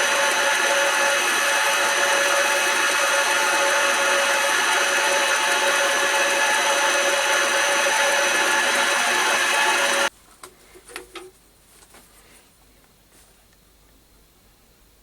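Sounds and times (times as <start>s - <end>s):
metal lathe whining: 0.0s - 10.1s.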